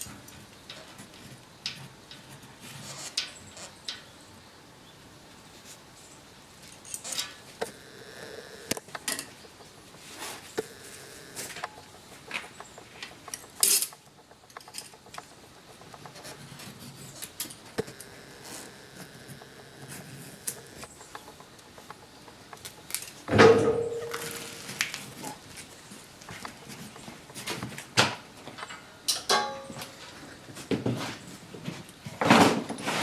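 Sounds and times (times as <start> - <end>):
metallic clinks of hand tools: 11.4 - 17.8
loud metal clank: 23.3 - 24.5.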